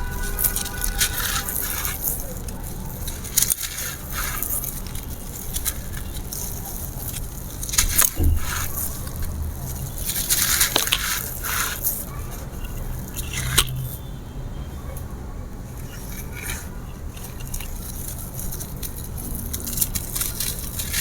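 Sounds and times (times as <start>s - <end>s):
concrete crunching and crackling: 0.0s - 14.1s, 14.8s - 21.0s.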